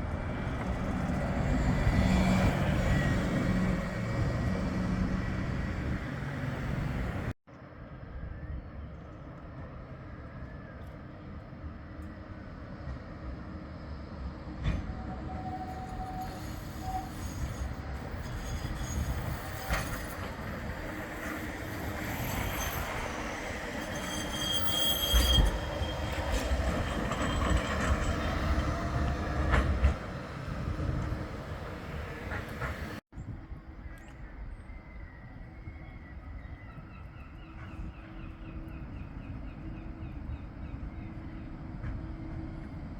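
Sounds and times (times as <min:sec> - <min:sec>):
tram wheels squealing: 0:00.0 - 0:07.3, 0:13.8 - 0:33.0
tram running on street track: 0:00.0 - 0:42.9.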